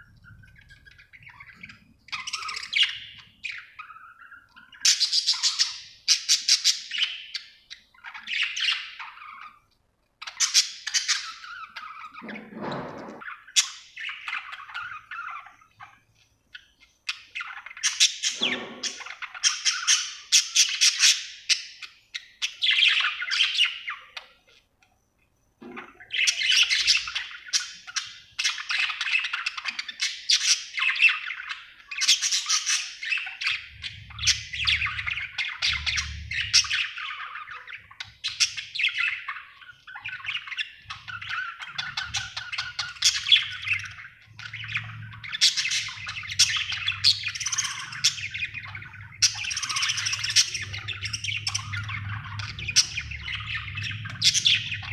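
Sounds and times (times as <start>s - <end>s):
budgerigar chirping: 0.2s - 9.6s, 26.0s - 54.9s.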